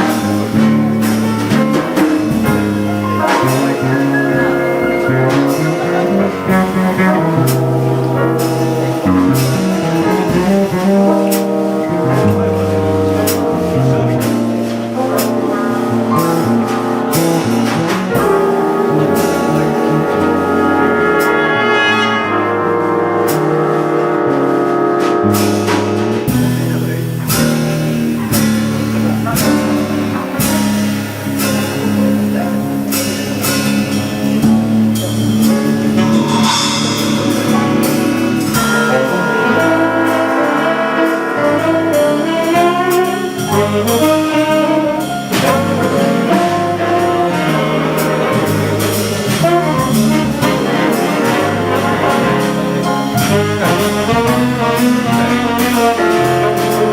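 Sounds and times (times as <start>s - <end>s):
jazz big band playing: 0.0s - 56.9s
cymbal strokes: 25.4s - 45.5s.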